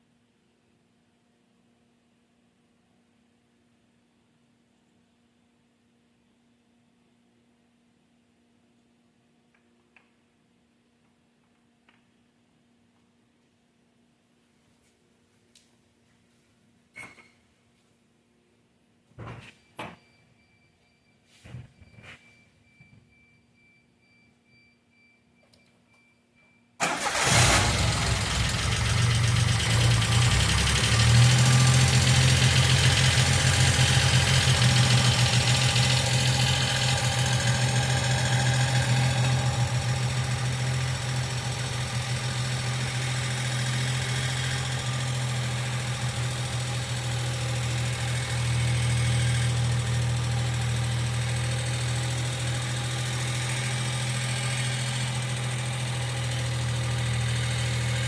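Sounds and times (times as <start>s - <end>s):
car engine starting and idling: 26.8s - 58.0s
fine engine ticking: 26.8s - 58.0s.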